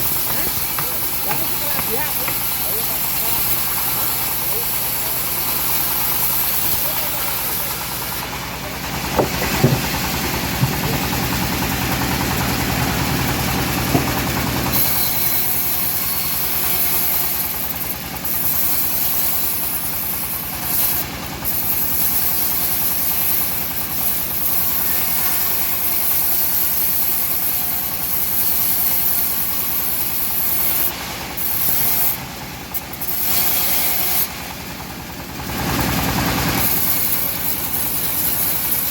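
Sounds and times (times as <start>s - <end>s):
sawmill engine running: 0.0s - 38.9s
sharp knocks: 9.1s - 11.4s, 13.8s - 14.5s.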